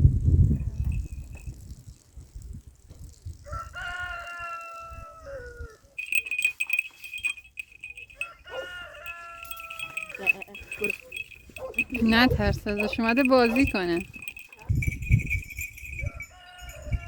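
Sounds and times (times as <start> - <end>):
small bell jingling: 0.5 - 2.0, 4.2 - 5.2, 6.0 - 17.0.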